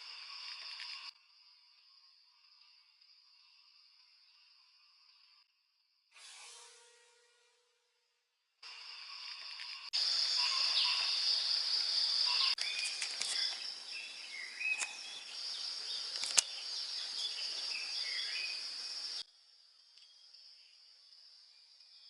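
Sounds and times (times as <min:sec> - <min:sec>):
high insect drone: 0:00.0 - 0:07.2, 0:08.6 - 0:22.0
birds chirping: 0:09.9 - 0:19.2.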